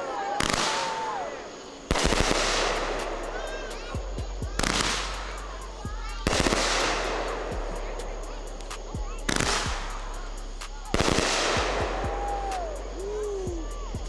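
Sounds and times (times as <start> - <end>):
fireworks bangs: 0.0 - 14.0
fireworks crackle: 0.0 - 14.0.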